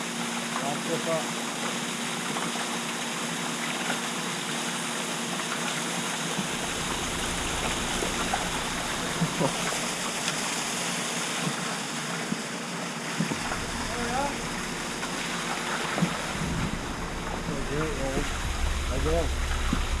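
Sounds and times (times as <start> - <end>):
water rushing: 4.4 - 20.0
faint low hum: 6.4 - 10.8, 13.3 - 20.0.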